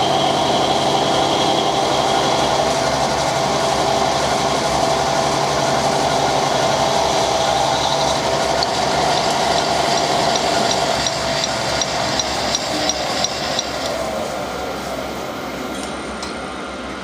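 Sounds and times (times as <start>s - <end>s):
machine tool motor humming: 6.2s - 14.8s.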